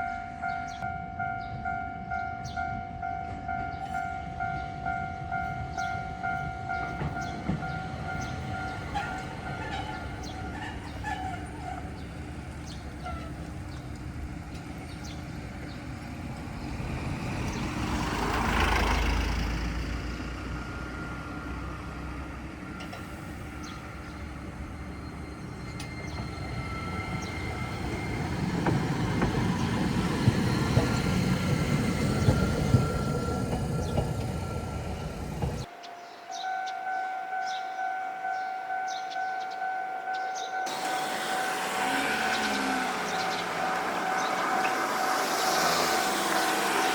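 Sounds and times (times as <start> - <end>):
tram passing: 0.0 - 46.9
vehicle passing: 15.9 - 22.5, 40.7 - 46.9.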